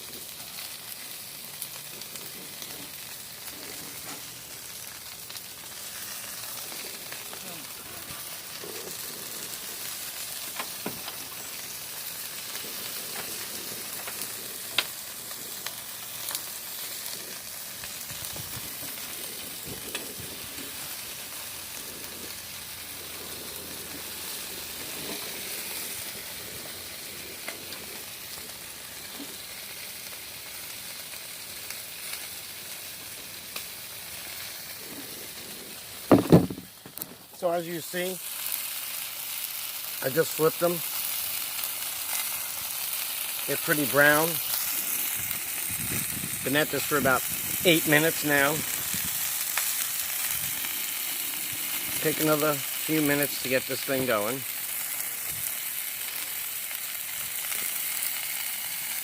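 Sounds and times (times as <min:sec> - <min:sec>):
food sizzling on a griddle: 0:00.0 - 0:59.0.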